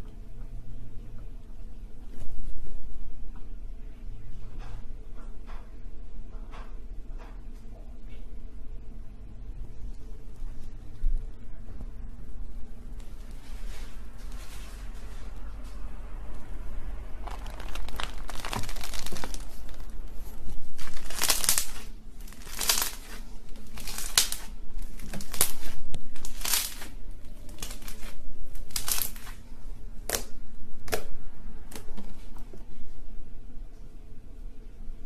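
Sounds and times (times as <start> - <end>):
slime squelching by hand: 17.0 - 29.4.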